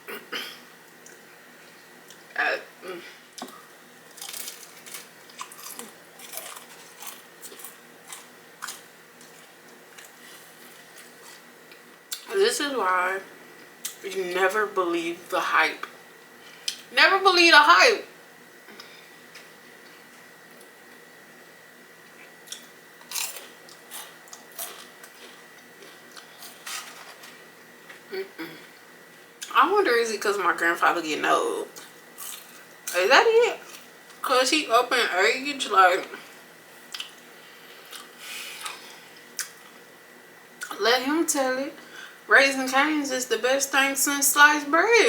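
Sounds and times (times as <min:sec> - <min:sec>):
person biting and chewing food: 0:03.4 - 0:12.2, 0:22.1 - 0:27.2, 0:32.2 - 0:32.7, 0:36.8 - 0:39.8
crisp crunches: 0:04.1 - 0:11.4, 0:22.5 - 0:27.4.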